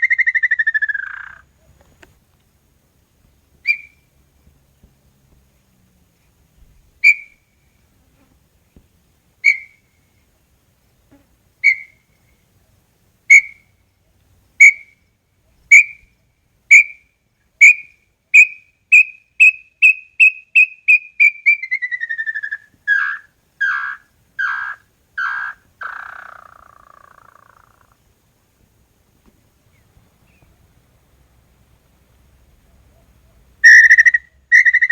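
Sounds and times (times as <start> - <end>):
bird whistled notes: 3.7 - 4.0, 7.0 - 7.4, 9.4 - 9.8, 11.6 - 12.0, 17.6 - 26.8, 33.6 - 34.9.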